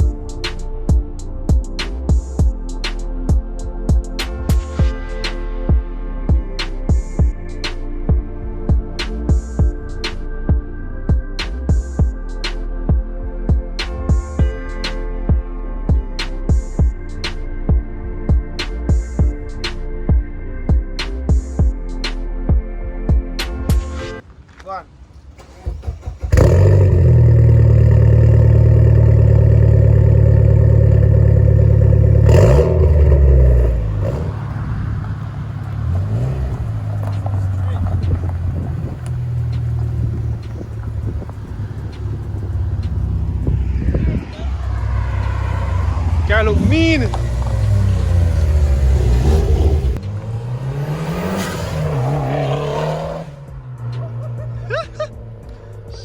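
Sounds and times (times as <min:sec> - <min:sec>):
loud car engine running: 0:25.4 - 0:56.0.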